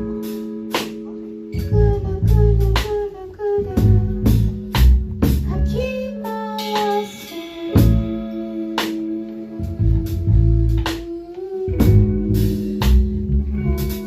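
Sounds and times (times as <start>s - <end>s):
drum kit hits: 0.0s - 3.0s, 3.8s - 5.9s, 6.6s - 9.2s, 11.8s - 14.0s
bass line: 0.0s - 6.3s, 7.6s - 14.0s
held guitar notes: 0.0s - 14.0s
woman singing: 1.5s - 4.8s, 5.4s - 12.6s.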